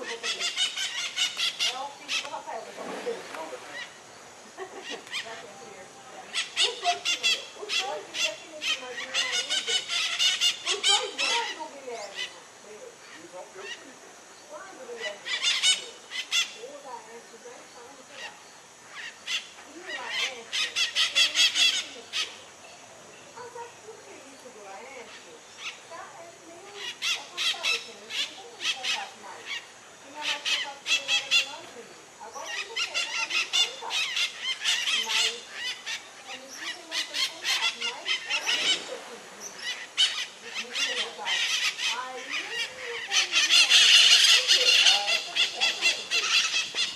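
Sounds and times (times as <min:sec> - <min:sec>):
parrots squawking: 0:00.0 - 0:02.4, 0:06.3 - 0:12.4, 0:14.9 - 0:16.6, 0:18.9 - 0:22.4, 0:26.6 - 0:46.9.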